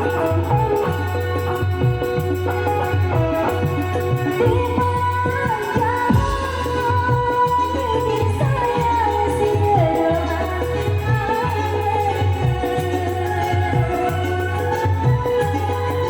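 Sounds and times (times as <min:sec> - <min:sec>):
sliding lead melody: 0:00.0 - 0:16.0
pulsing bass beat: 0:06.1 - 0:11.7.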